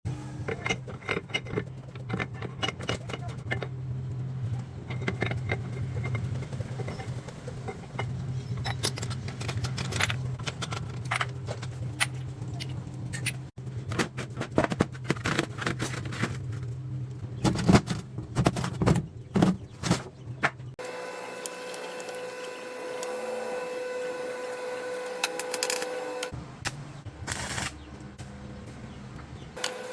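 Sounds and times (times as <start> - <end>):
workshop machine whine: 0.0 - 29.9
low machine hum: 0.1 - 25.0
metal tools clinking and scraping: 0.4 - 3.8, 4.4 - 16.8.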